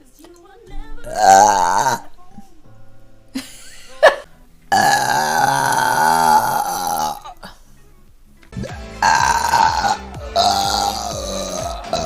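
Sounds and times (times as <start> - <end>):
woman burping: 1.1 - 2.1, 4.0 - 7.6, 8.6 - 12.0.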